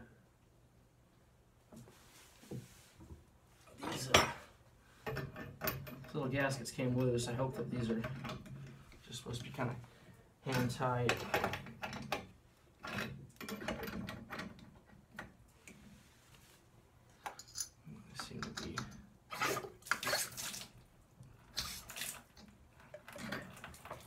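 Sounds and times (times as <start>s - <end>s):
metal parts clinking: 17.2s - 17.8s
water running from faucet: 19.9s - 20.8s, 21.6s - 22.3s.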